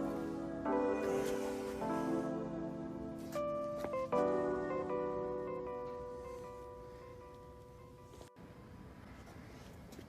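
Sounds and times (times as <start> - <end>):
held musical chord: 0.0 - 8.4.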